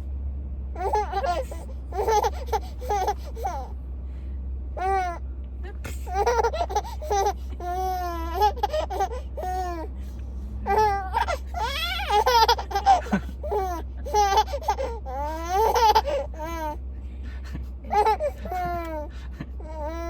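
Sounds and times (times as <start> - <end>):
baby laughing: 0.8 - 3.7, 5.9 - 9.9, 10.7 - 16.8, 17.6 - 20.0.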